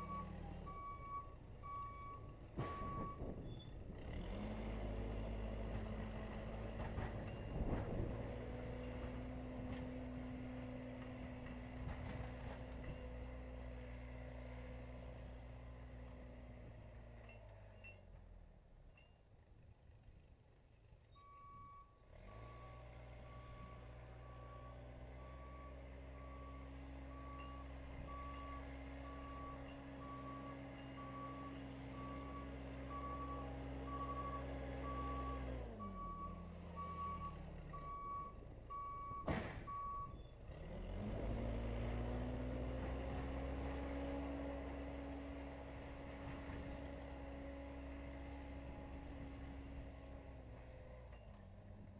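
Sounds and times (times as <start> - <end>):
diesel engine running: 0.0 - 18.1, 22.1 - 51.9.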